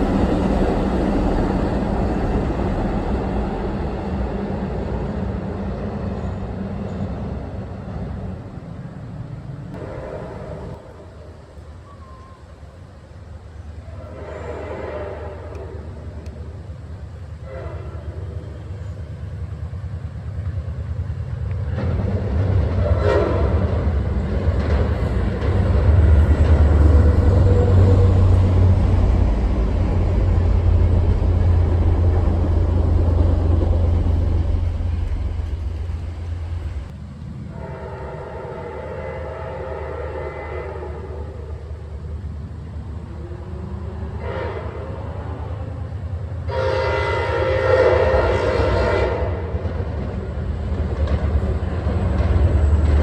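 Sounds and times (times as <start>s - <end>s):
diesel train passing: 0.0s - 53.0s
train horn: 9.7s - 12.5s, 13.8s - 16.5s, 17.3s - 19.0s, 22.6s - 35.7s, 37.4s - 41.9s, 43.1s - 49.9s.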